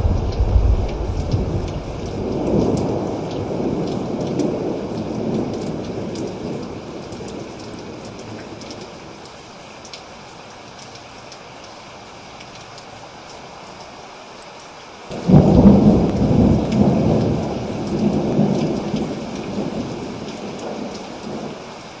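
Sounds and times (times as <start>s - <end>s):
rolling thunder: 0.0s - 7.6s, 15.1s - 21.6s
rain falling: 0.0s - 22.0s.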